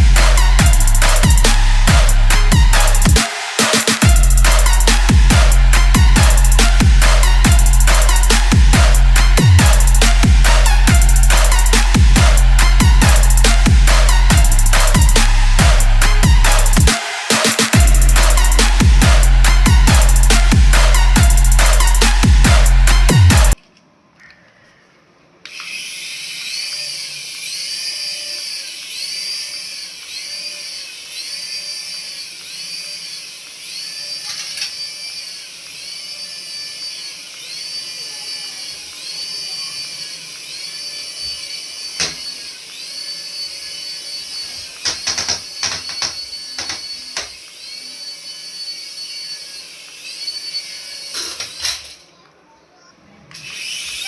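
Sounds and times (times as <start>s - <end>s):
rising and falling electronic tone: 0.0s - 23.6s
small electric motor whining: 0.0s - 23.6s, 25.4s - 52.2s, 53.3s - 54.0s.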